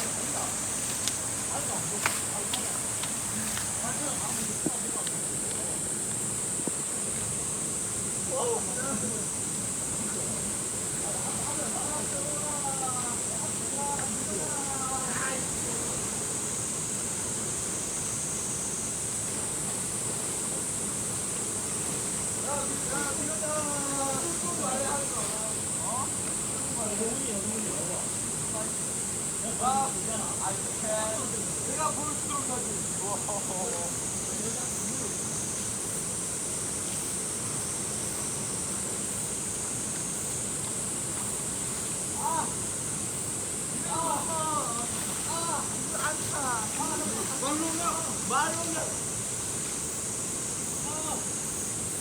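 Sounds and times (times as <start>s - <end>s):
stream flowing over rocks: 0.0s - 8.1s, 38.8s - 51.0s
constant high hiss: 0.0s - 52.0s
stream water rushing: 0.0s - 52.0s.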